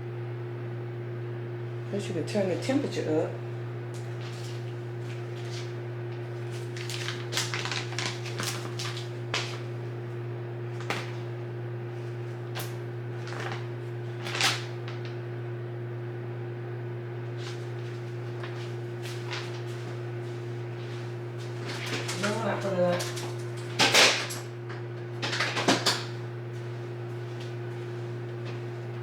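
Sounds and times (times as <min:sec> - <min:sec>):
low electrical hum: 0:00.0 - 0:29.0.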